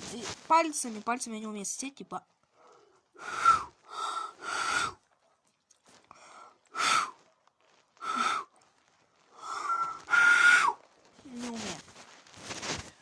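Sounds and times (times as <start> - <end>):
hissing finger whistle blasts: 3.2 - 3.7, 9.5 - 10.8.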